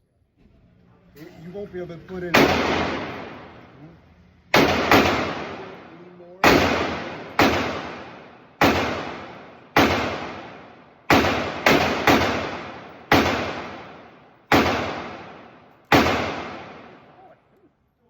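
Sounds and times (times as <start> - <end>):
pistol shots echoing: 2.2 - 3.7, 4.5 - 17.3.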